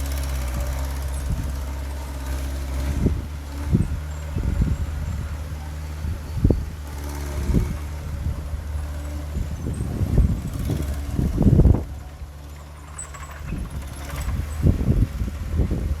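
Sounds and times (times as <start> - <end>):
diesel engine running: 0.0 - 16.0.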